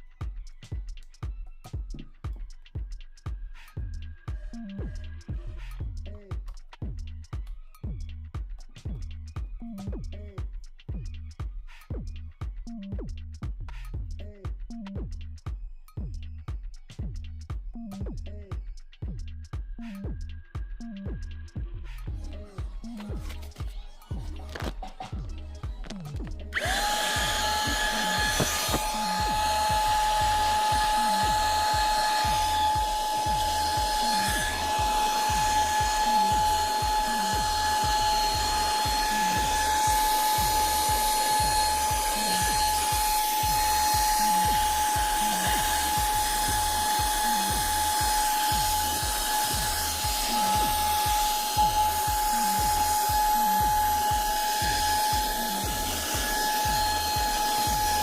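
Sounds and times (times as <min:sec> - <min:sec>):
handheld vacuum cleaner whining: 0:26.5 - 0:58.0.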